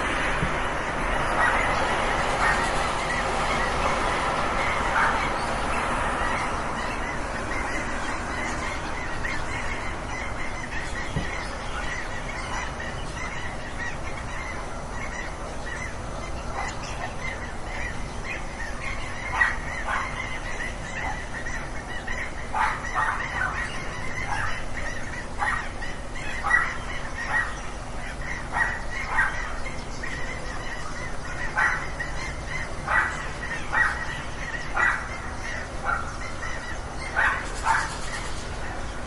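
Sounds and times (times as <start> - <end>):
geese honking: 0.0 - 39.0.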